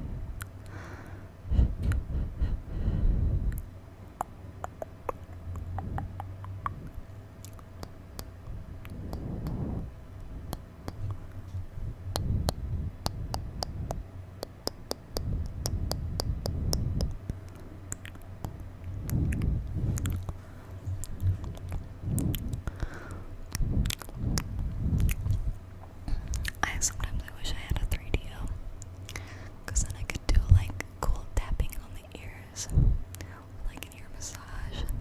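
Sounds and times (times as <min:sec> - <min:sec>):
lip smacks: 0:00.4 - 0:00.8, 0:03.5 - 0:35.0
tongue clicks: 0:00.4 - 0:00.8, 0:03.5 - 0:09.6, 0:10.2 - 0:11.5, 0:12.1 - 0:25.5, 0:26.1 - 0:31.0
squelchy moist mouth noises: 0:03.5 - 0:22.8, 0:23.5 - 0:32.0.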